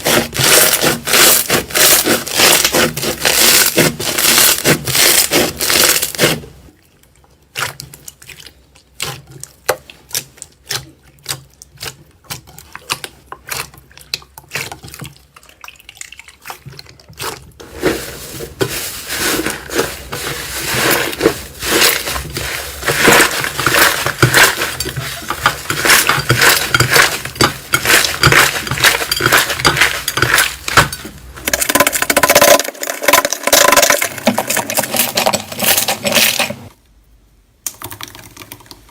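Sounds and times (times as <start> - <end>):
slime squishing with sticky clicks: 7.5 - 15.5.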